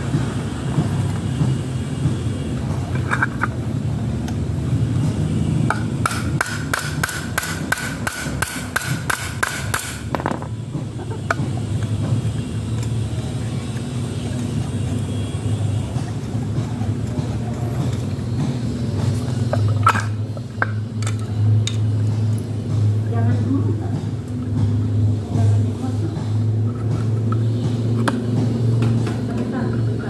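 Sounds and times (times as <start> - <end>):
sharp knocks: 5.7 - 12.2.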